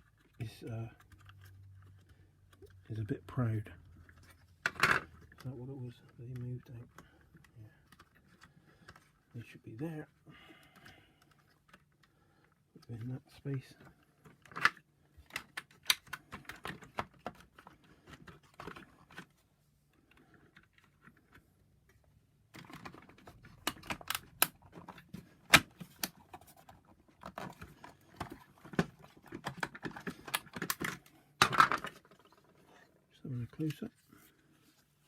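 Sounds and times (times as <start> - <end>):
plastic taps and scraping: 13.8 - 32.9.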